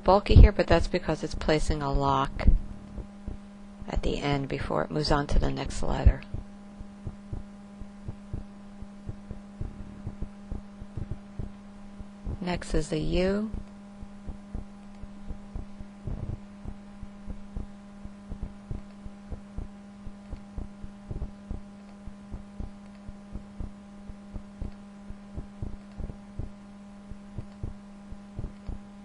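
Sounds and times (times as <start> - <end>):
steady electrical hum: 0.0 - 29.0
computer mouse clicking: 27.4 - 27.6.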